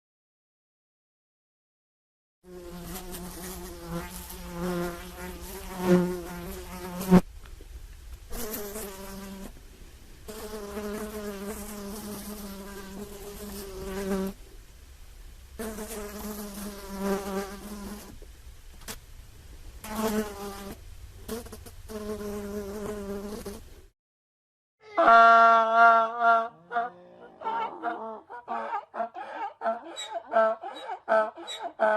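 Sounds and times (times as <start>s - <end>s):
honeybee buzzing: 2.5s - 7.2s, 8.3s - 9.5s, 10.3s - 14.4s, 15.6s - 18.2s, 19.8s - 23.6s.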